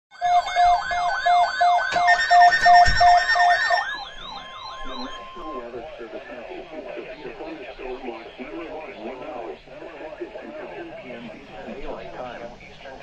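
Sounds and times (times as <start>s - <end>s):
electronic sirens yelping: 0.1s - 11.3s
pulsing beep: 0.2s - 9.5s.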